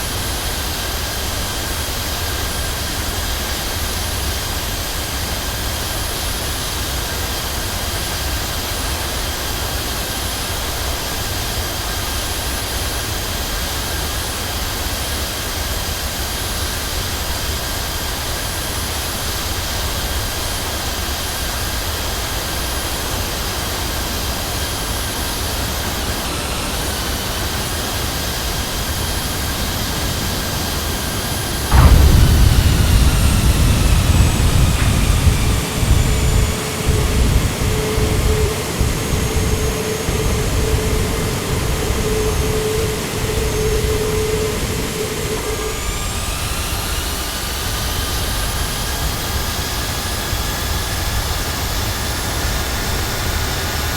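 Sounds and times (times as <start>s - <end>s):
jet engines whining: 23.1s - 48.7s
wheels touching down rumble: 25.8s - 45.2s.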